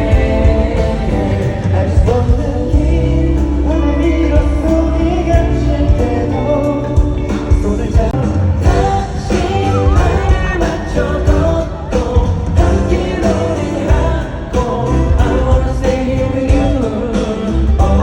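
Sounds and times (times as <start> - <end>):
pop song sung live: 0.0 - 18.0.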